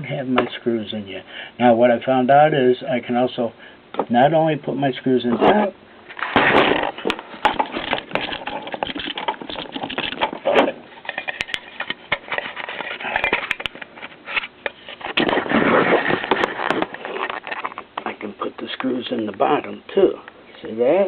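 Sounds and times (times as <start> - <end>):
metal cans clicking and scraping: 6.1 - 18.2.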